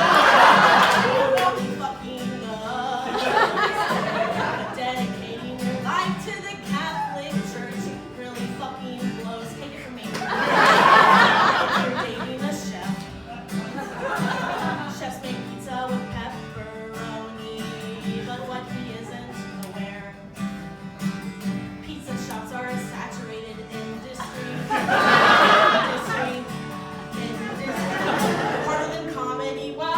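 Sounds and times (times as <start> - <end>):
audience laughing: 0.0 - 1.9, 2.7 - 6.2, 10.1 - 15.2, 24.2 - 29.6
woman singing: 0.0 - 20.8, 21.4 - 29.9
acoustic guitar: 0.0 - 29.9.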